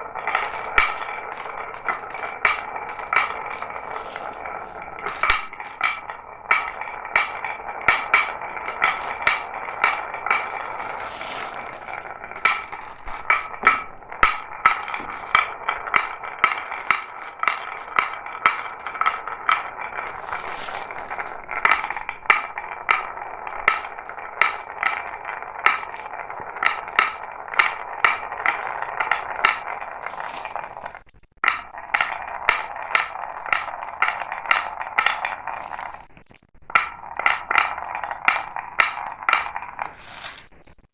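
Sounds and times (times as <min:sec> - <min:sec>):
marbles clicking: 0:00.0 - 0:40.9
marbles rolling on a track: 0:00.0 - 0:40.9.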